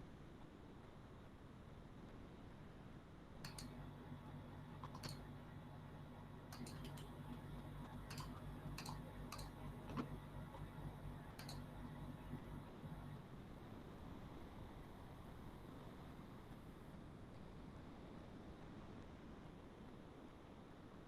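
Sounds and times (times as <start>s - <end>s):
low steady hum: 0.0s - 21.0s
faint computer mouse clicks: 3.4s - 3.8s, 4.8s - 5.3s, 6.5s - 7.1s, 8.1s - 10.1s, 11.3s - 11.7s.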